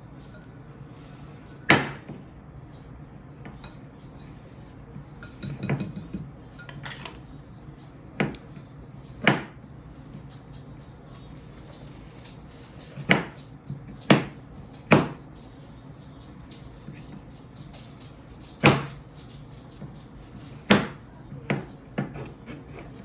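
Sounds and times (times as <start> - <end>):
kitchenware clinking and knocking: 5.2 - 7.2.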